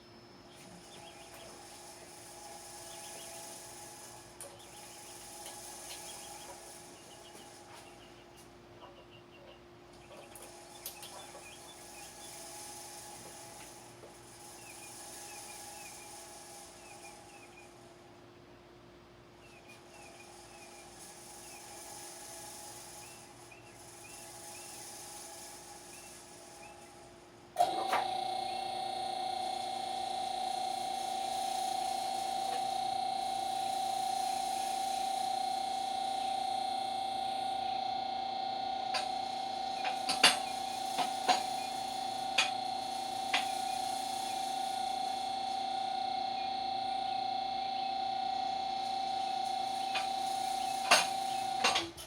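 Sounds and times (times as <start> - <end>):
hydraulic pump humming: 27.6 - 52.0.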